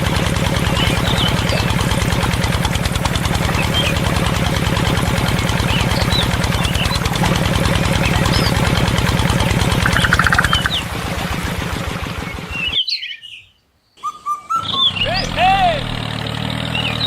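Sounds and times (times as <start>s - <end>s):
small engine knocking: 0.0s - 12.5s
birds chirping: 9.8s - 10.9s
short high tone: 9.9s - 10.8s.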